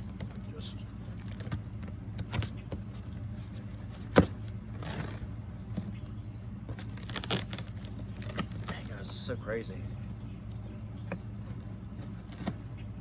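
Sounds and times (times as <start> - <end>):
steady low hum: 0.0 - 13.0
cardboard package clicks and scrapes: 1.0 - 6.1, 6.7 - 9.2, 11.3 - 12.7
tape ripping: 1.1 - 1.6, 2.2 - 5.9, 6.7 - 9.1.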